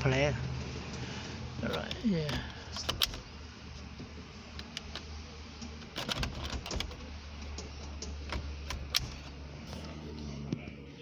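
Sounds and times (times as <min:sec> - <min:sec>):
handling clicks and taps: 0:01.6 - 0:09.9.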